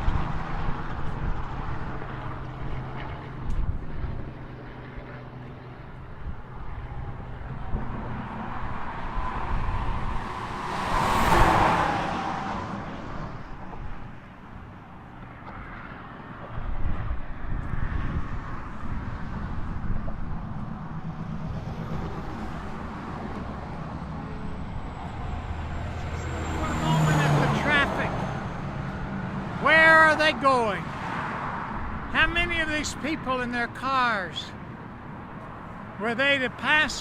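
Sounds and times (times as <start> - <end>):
highway traffic: 0.0 - 37.0
vehicle passing close: 6.6 - 33.2.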